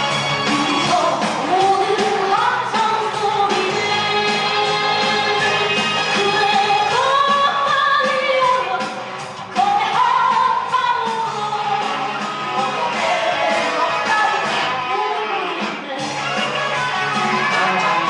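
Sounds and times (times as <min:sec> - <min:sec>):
song with sung melody: 0:00.0 - 0:18.0.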